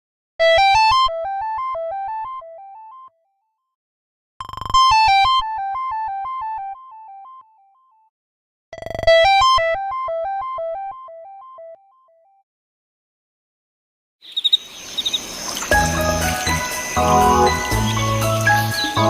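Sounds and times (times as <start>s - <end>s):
synthesized phone ringtone: 8.8s - 12.2s.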